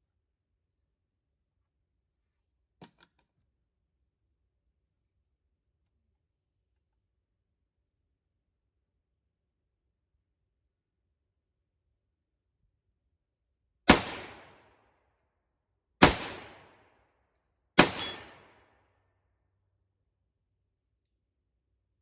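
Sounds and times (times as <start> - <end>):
rifle shots with echo: 13.9 - 14.7, 16.0 - 16.9, 17.8 - 18.6.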